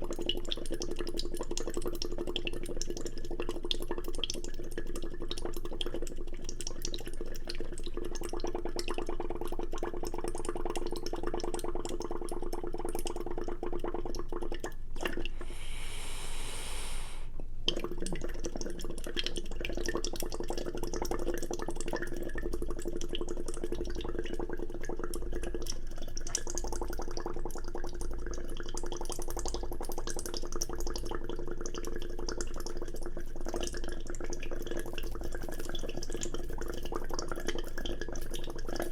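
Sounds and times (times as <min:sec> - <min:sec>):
wet slurping and eating: 0:15.0 - 0:20.6
bright hiss: 0:15.3 - 0:17.4
steady hum: 0:15.3 - 0:17.6.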